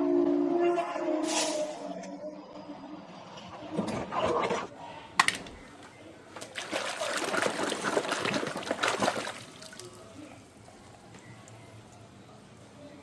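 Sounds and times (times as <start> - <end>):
water running and splashing: 6.4 - 10.2.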